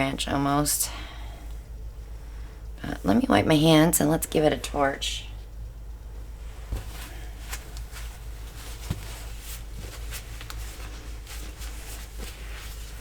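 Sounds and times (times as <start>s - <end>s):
low hum: 0.0s - 13.0s
handling taps and rustles: 6.6s - 13.0s.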